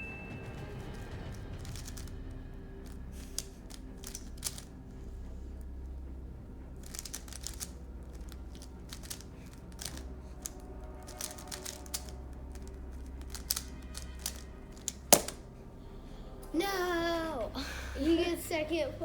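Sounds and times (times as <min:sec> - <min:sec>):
low steady hum: 0:00.0 - 0:19.0
plastic puzzle cubes clicking: 0:00.8 - 0:04.8, 0:06.8 - 0:15.4.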